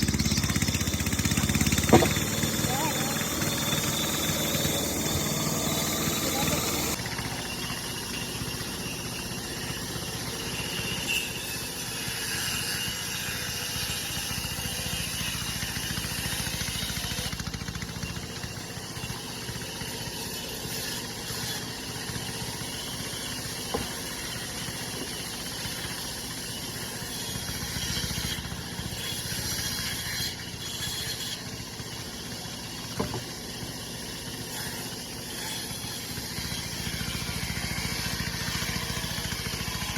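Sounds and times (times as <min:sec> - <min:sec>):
bandsaw motor hum and hiss: 0:00.0 - 0:39.9.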